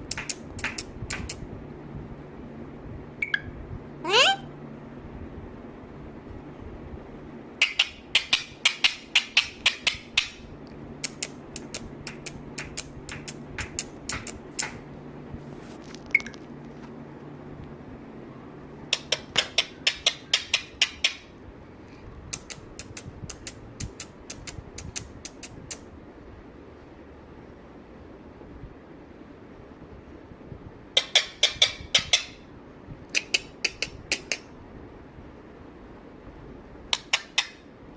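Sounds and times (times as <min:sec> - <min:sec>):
sharp taps: 0:00.1 - 0:01.4, 0:11.1 - 0:14.8.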